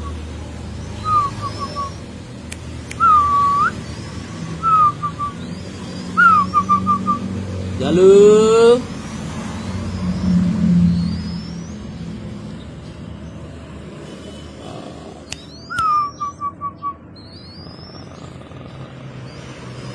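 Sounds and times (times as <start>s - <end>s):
faint high bird chirps: 0.8s - 2.1s, 9.6s - 12.0s, 15.3s - 19.5s.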